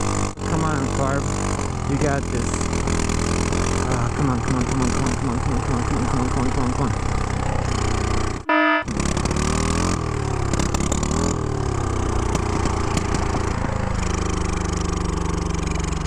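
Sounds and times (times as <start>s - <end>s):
scooter engine running unevenly: 0.0s - 16.0s
brief loud tone: 8.4s - 9.0s.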